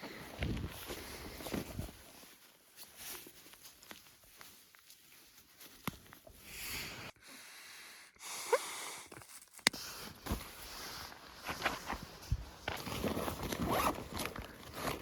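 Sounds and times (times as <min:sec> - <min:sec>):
rustling and scraping: 0:00.4 - 0:06.4, 0:09.1 - 0:15.0.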